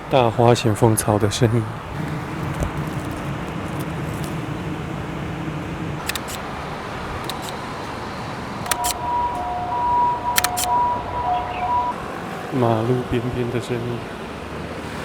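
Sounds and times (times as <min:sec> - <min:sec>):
low vehicle hum: 0:00.0 - 0:15.0
traffic noise: 0:00.0 - 0:15.0
camera shutter clicking: 0:02.4 - 0:04.4, 0:06.0 - 0:07.8, 0:08.7 - 0:10.9
two-note tone: 0:08.7 - 0:12.1.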